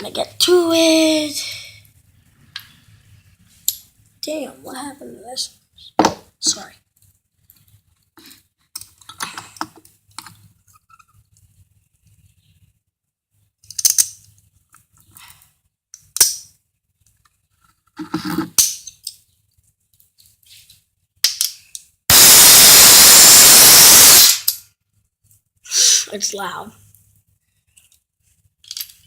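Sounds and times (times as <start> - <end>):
objects clicking and knocking: 13.6 - 15.2, 28.6 - 29.0
loud rush of air: 22.1 - 24.4.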